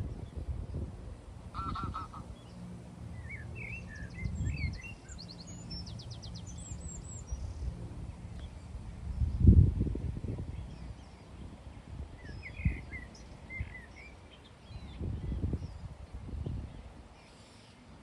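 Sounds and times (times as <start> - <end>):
songbirds chirping: 0.0 - 18.0
wind rumbling on microphone: 0.0 - 18.0
waterfowl honking: 1.5 - 2.4.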